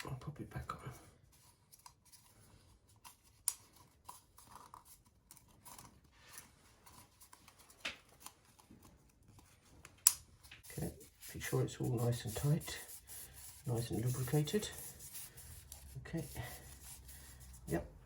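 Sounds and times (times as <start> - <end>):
soft rubbing: 10.6 - 18.0.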